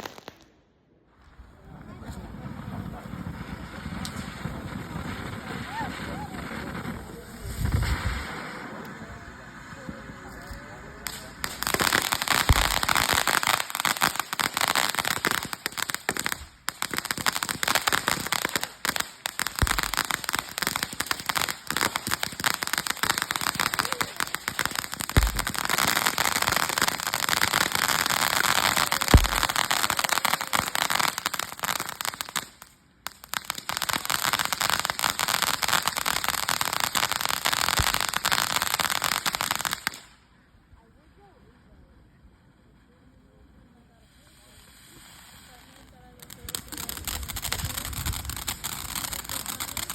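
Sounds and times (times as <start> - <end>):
fireworks crackling: 0.0 - 41.6, 42.4 - 49.9
deep firework thumps: 12.4 - 13.0, 19.5 - 20.3, 25.1 - 26.0, 29.1 - 29.8.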